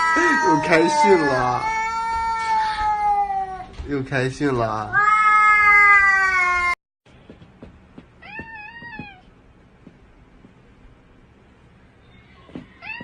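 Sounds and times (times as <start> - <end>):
cat yowling: 0.0 - 3.7, 4.9 - 6.8, 8.2 - 9.2, 12.8 - 13.0
cat meowing: 0.0 - 3.8, 4.9 - 6.8, 8.2 - 9.3, 12.7 - 13.0.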